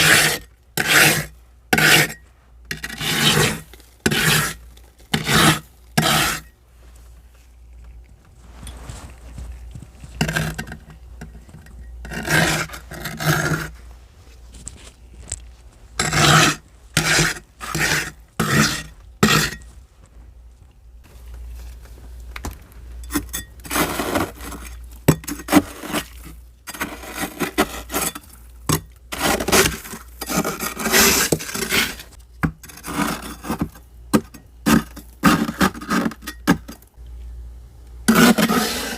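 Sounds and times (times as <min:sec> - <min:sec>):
ice being scraped: 0:00.0 - 0:06.6, 0:08.5 - 0:13.8, 0:16.0 - 0:19.7, 0:23.1 - 0:33.8, 0:34.6 - 0:36.7, 0:38.1 - 0:38.9
steady low hum: 0:00.0 - 0:38.9.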